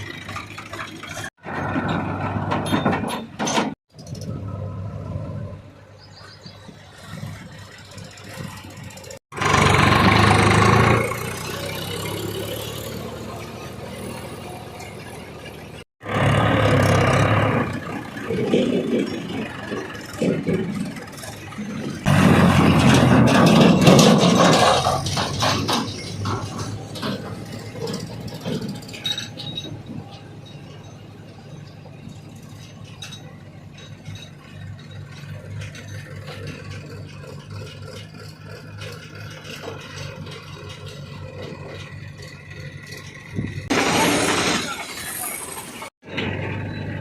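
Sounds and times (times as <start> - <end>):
diesel engine running: 0.0 - 2.8, 7.3 - 47.0
metallic clinks and rattles: 23.3 - 43.7.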